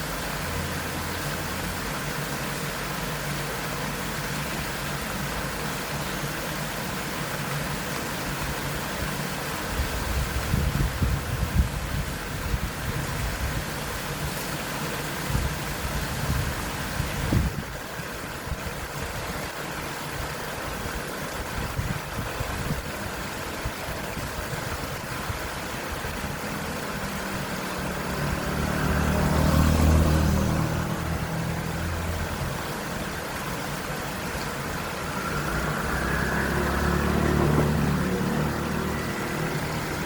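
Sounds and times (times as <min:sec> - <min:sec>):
small waterfall rushing: 0:00.0 - 0:40.0
motorcycle passing: 0:26.4 - 0:32.7, 0:34.1 - 0:40.0.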